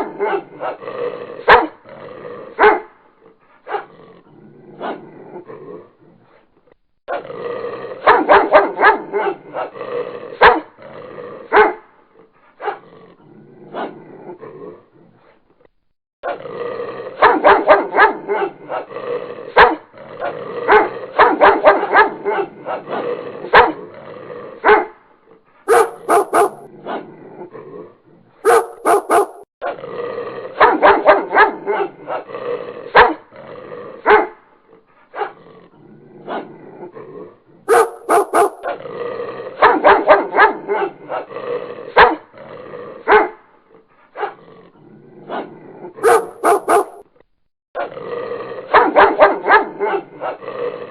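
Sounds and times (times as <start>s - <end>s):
dog barking: 1.5s - 1.8s, 2.6s - 3.0s, 8.0s - 9.4s, 10.4s - 10.7s, 11.5s - 11.9s, 17.2s - 18.6s, 19.6s - 19.8s, 20.7s - 22.4s, 23.5s - 23.8s, 24.6s - 25.0s, 25.7s - 26.7s, 28.4s - 29.5s, 30.6s - 31.9s, 33.0s - 33.2s, 34.0s - 34.4s, 35.2s - 35.4s, 37.7s - 38.8s, 39.6s - 41.0s, 42.0s - 42.2s, 43.1s - 43.4s, 44.2s - 44.4s, 46.0s - 47.1s, 48.7s - 50.1s.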